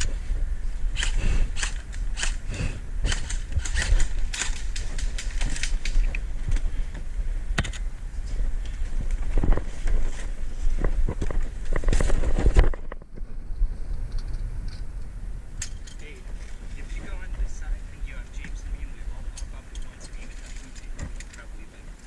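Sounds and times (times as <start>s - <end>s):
wind rumble on microphone: 0.0s - 22.0s.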